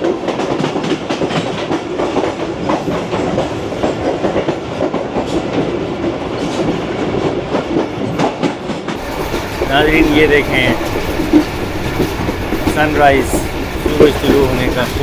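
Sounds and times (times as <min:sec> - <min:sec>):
train rumbling: 0:00.0 - 0:15.0
wheels clattering over rail joints: 0:08.0 - 0:15.0.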